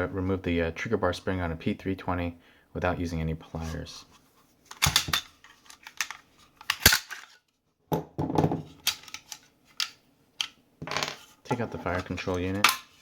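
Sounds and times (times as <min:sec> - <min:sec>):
pistol parts clicking and clinking: 0:04.7 - 0:07.4, 0:08.8 - 0:11.2, 0:12.5 - 0:13.0.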